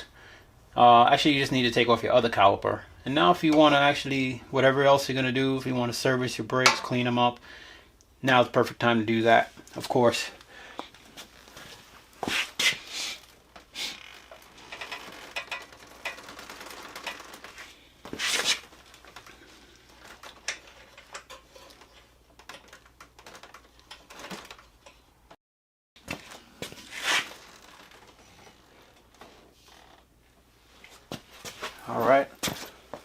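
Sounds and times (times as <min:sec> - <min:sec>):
tools clicking and clanking: 0:14.4 - 0:17.5, 0:20.0 - 0:25.1.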